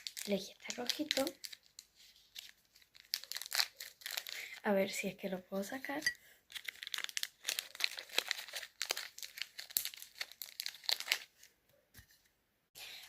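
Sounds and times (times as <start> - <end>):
packaging crinkling and rustling: 0.0 - 4.6, 6.5 - 11.6.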